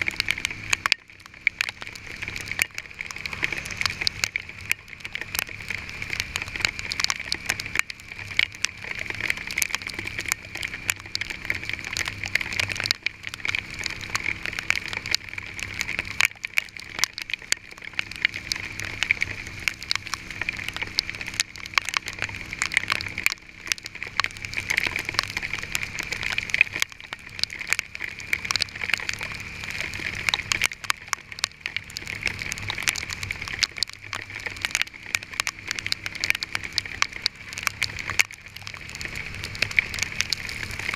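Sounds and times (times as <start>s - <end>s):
hail pelting a vehicle: 0.0s - 40.9s.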